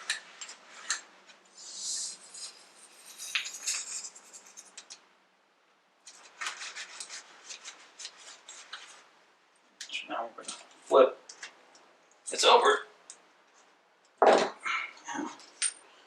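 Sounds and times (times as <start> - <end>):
hands handling metal parts: 15.4 - 15.9.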